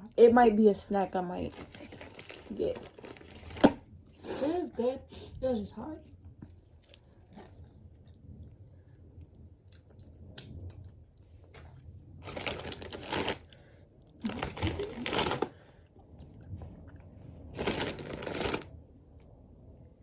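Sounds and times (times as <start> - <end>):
chips crunching: 1.6 - 3.8, 12.2 - 13.6, 14.2 - 15.6, 17.6 - 18.7.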